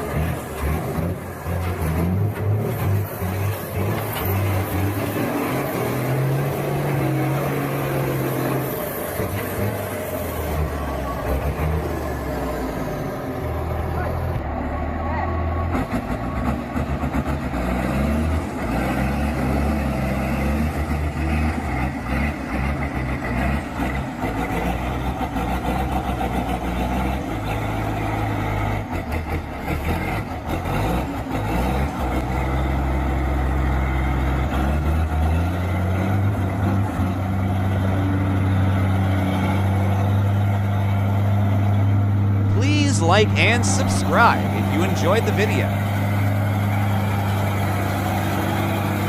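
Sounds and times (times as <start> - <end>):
heavy vehicle engine running: 0.0 - 49.0.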